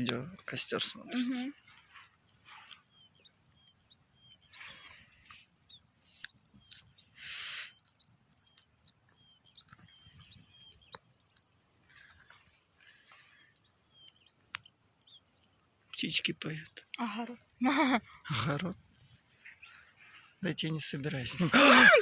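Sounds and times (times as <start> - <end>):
small birds chirping: 0.0 - 22.0
sharp clicks: 6.2 - 11.5, 13.5 - 15.7.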